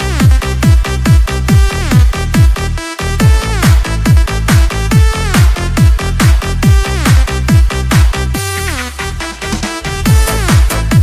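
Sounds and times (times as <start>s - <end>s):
kick drum beat: 0.0s - 2.6s, 3.2s - 8.4s, 10.1s - 11.0s
held synth chords: 0.0s - 11.0s.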